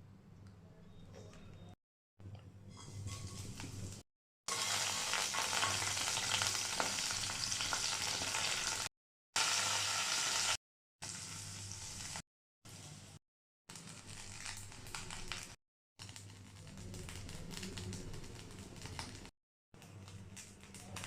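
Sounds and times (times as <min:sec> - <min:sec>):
food frying in hot oil: 0:04.5 - 0:21.0.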